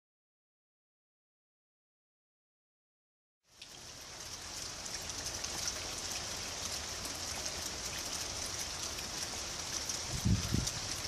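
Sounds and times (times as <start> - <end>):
steady rain falling: 3.4 - 11.0.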